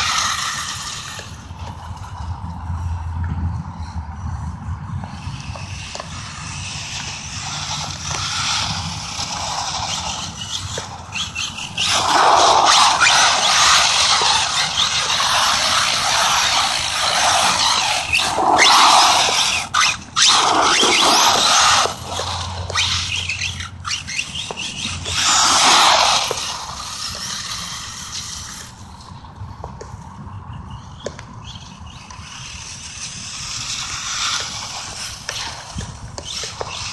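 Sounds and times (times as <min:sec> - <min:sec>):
tyre noise: 0:00.0 - 0:36.9
electric motor whine: 0:05.0 - 0:29.0.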